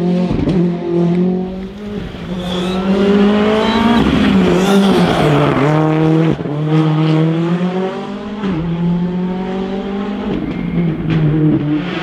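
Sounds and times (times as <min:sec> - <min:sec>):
car engine accelerating hard: 0:00.0 - 0:12.0.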